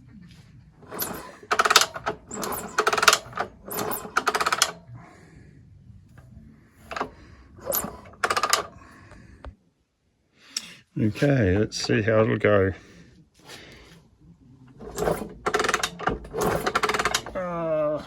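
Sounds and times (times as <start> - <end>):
motorcycle kick-start clicking: 0.8 - 4.8, 6.8 - 8.8, 14.8 - 17.4.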